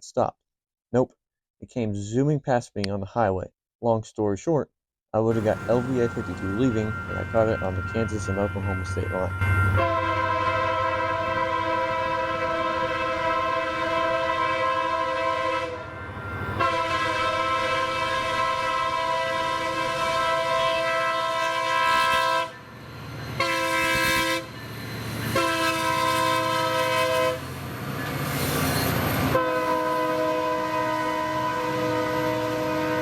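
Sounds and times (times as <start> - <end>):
train rumbling and clattering: 5.3 - 14.1, 21.3 - 29.4
locomotive air horn blasts: 9.8 - 16.0, 16.6 - 22.7, 23.4 - 24.6, 25.2 - 27.5, 29.3 - 33.0.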